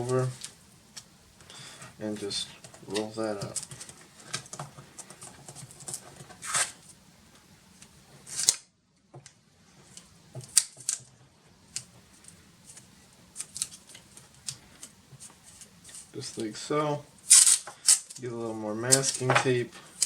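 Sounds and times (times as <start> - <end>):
cardboard rustling and scraping: 2.0 - 7.0.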